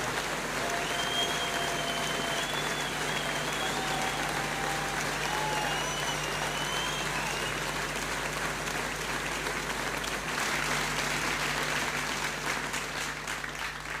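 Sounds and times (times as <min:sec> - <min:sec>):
crowd applauding and cheering: 0:00.0 - 0:14.0
whistle from crowd: 0:00.7 - 0:07.7.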